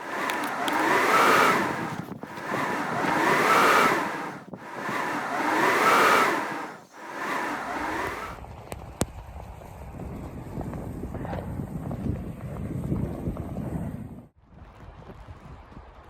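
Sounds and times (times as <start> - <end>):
blizzard wind howling: 0.0 - 8.4.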